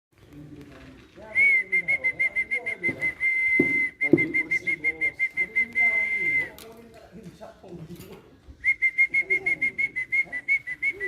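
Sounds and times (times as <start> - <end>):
high steady whistle: 1.4 - 6.5, 8.6 - 11.0.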